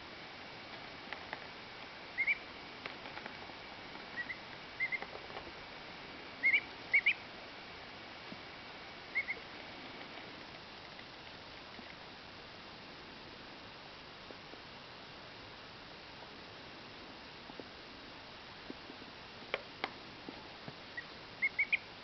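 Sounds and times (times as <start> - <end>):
duckling peeping: 2.1 - 2.5, 4.0 - 5.5, 6.4 - 7.2, 9.1 - 9.5, 20.9 - 21.9.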